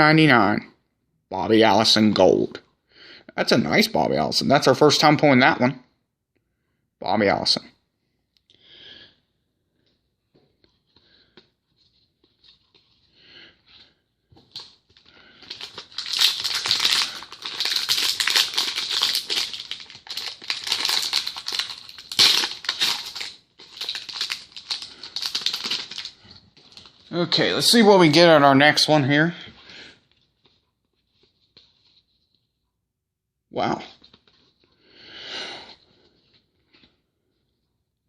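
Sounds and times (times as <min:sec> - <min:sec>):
wrapper crinkling and tearing: 0:14.4 - 0:27.8.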